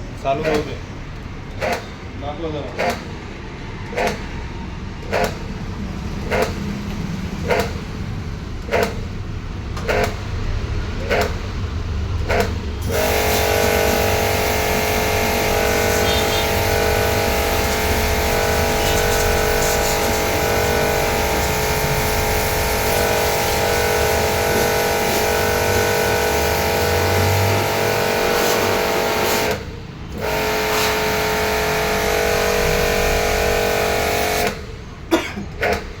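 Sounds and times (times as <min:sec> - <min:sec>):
washing machine whirring drone: 0:00.0 - 0:36.0
washing machine knocking: 0:00.3 - 0:00.9.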